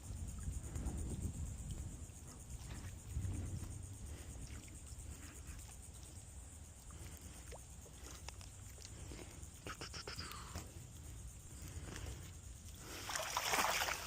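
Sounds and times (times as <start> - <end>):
low wind rumble on microphone: 0.0 - 5.7
steady high-pitched hiss: 0.0 - 14.0
faint ticks: 4.4 - 12.8.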